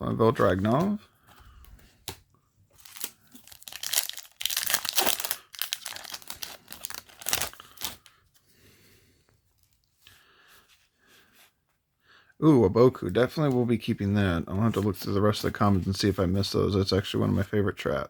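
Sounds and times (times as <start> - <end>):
foil wrapper tearing and crinkling: 2.8 - 8.2.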